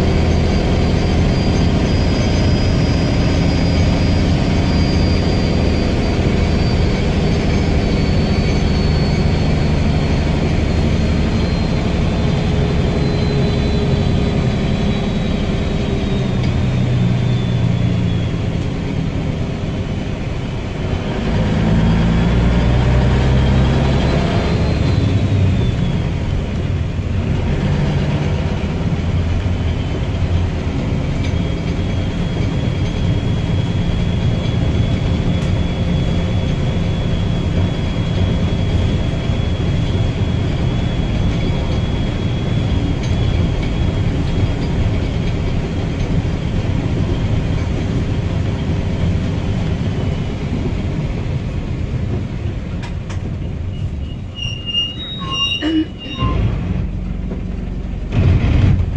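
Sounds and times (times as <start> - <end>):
bus engine running: 0.0 - 58.9
high-pitched whistle: 0.2 - 18.6, 53.7 - 56.6.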